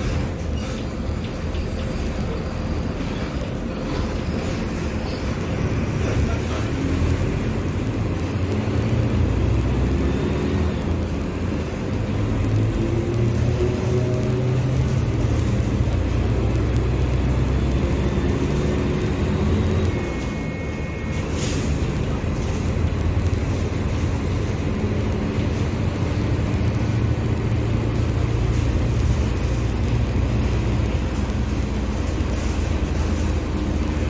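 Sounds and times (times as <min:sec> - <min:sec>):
bus diesel engine running: 0:00.0 - 0:34.0.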